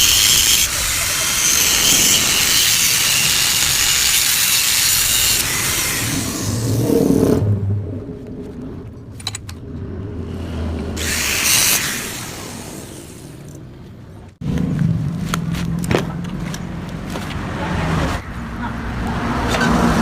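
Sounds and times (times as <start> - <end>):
power tool cutting steel: 0.0 - 7.0, 10.2 - 13.4.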